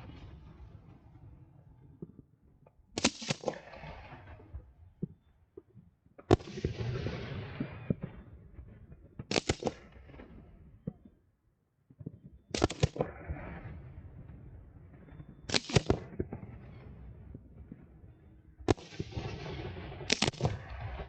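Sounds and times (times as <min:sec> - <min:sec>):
fireworks bangs: 0:03.0 - 0:05.2, 0:06.3 - 0:11.1, 0:12.0 - 0:21.0
fireworks crackling hiss: 0:18.7 - 0:21.0.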